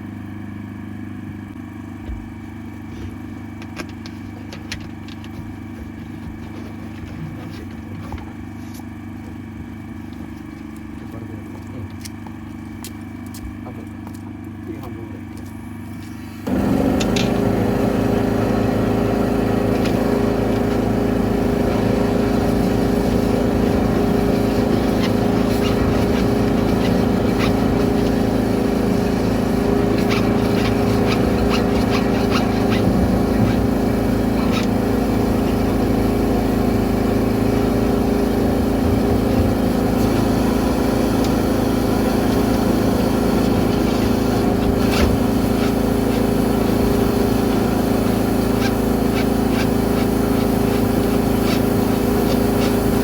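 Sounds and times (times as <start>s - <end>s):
pressure washer running: 0.0s - 53.0s.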